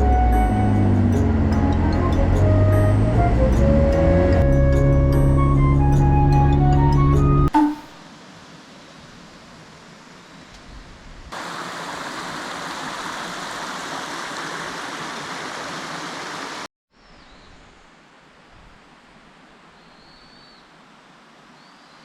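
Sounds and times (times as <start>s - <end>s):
mountain stream rushing: 11.3s - 16.7s.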